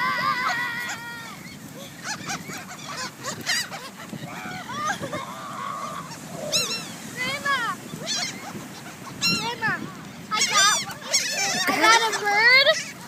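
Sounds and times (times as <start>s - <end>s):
seagulls calling: 0.0s - 13.0s.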